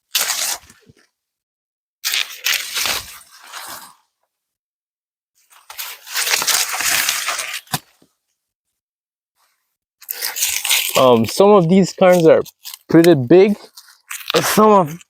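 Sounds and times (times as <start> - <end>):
dry corn leaves crackling: 5.7 - 7.8, 10.0 - 13.1, 14.1 - 15.0.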